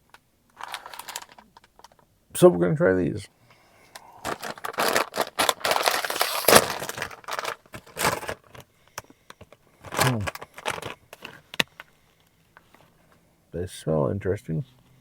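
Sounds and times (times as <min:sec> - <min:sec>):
foil bag crinkling and tearing: 0:00.6 - 0:02.0, 0:04.2 - 0:08.6, 0:09.8 - 0:11.4.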